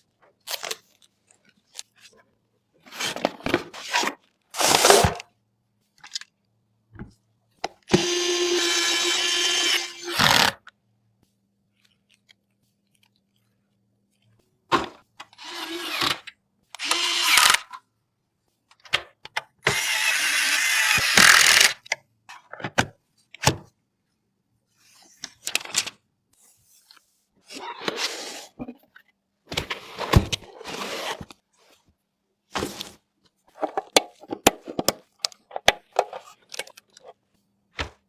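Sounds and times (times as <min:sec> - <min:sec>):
electric screwdriver running: 0:07.9 - 0:10.6, 0:15.4 - 0:16.2, 0:16.8 - 0:17.7, 0:19.7 - 0:21.8.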